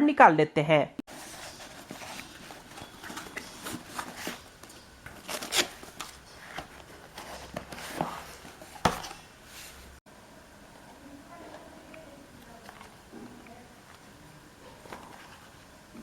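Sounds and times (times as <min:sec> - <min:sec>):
package rustling and crinkling: 0:01.1 - 0:10.0.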